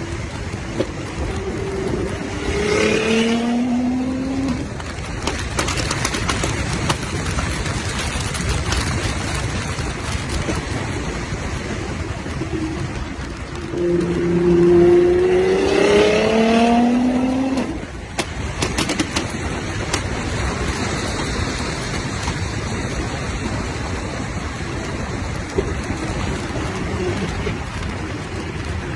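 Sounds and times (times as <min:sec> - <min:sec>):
exhaust pops and crackles: 0:00.0 - 0:28.9
steady noise: 0:00.0 - 0:28.9
car engine revving: 0:00.2 - 0:05.0, 0:13.6 - 0:18.0.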